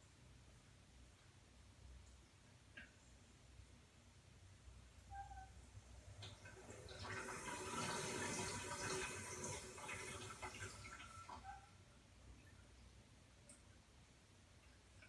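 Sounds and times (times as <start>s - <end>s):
water running through toilet: 6.0s - 11.6s.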